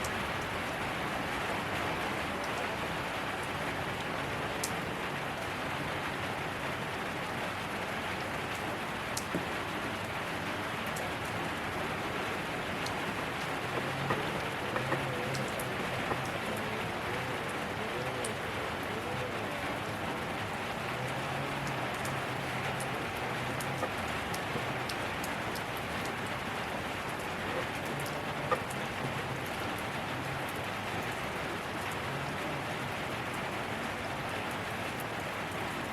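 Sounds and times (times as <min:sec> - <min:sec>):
steady rain hiss: 0:00.0 - 0:35.9
sharp drips: 0:07.6 - 0:35.4.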